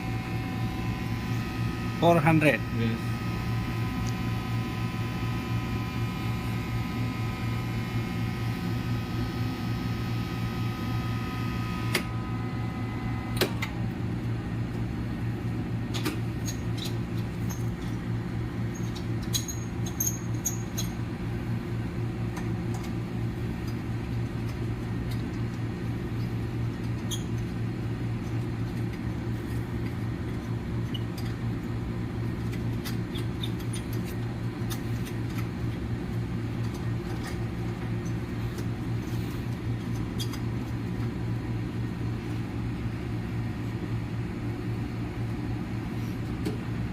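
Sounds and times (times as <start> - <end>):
high whine: 0.0 - 13.7
machine humming: 0.0 - 15.4.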